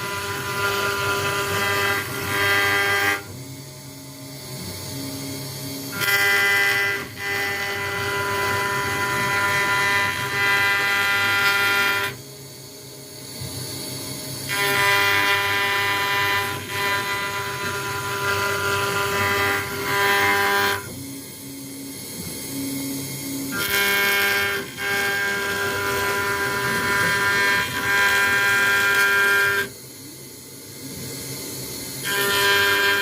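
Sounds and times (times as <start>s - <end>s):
router spindle whine: 0.0s - 33.0s.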